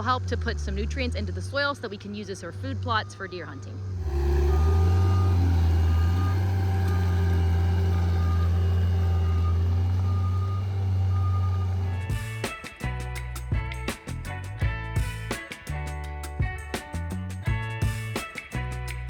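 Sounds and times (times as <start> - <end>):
diesel engine running: 0.0 - 13.9
backup alarm beeping: 0.2 - 12.4
music: 8.2 - 19.0.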